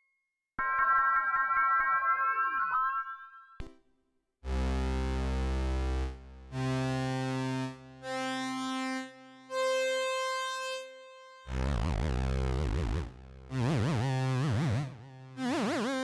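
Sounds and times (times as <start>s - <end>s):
synthesizer with wavering pitch: 4.5s - 16.0s.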